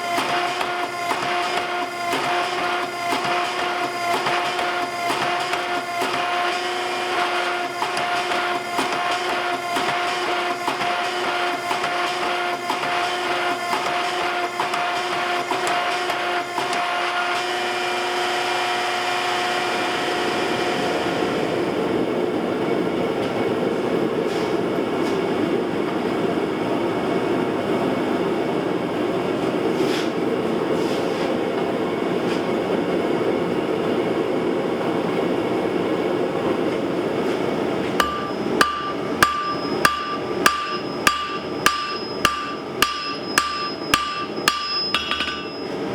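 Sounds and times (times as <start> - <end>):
mechanical hum with ticking: 0.0 - 30.7, 31.3 - 45.9
hammer striking iron on anvil: 38.0 - 45.9.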